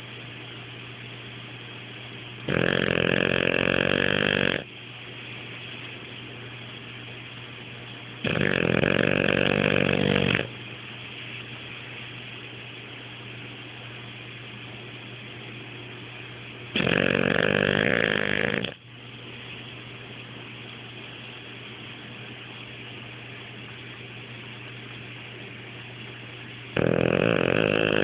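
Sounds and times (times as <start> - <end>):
steady hiss: 0.0 - 28.0
dog snoring: 2.4 - 4.7, 8.2 - 10.5, 16.7 - 18.8, 26.7 - 28.0.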